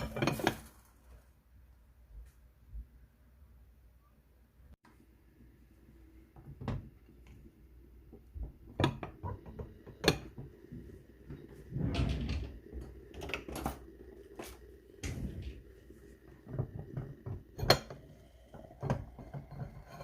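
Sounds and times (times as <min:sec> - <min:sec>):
kitchen items knocking: 0:00.0 - 0:00.8, 0:15.0 - 0:20.0
kitchen items clattering: 0:00.0 - 0:01.2, 0:08.2 - 0:20.0.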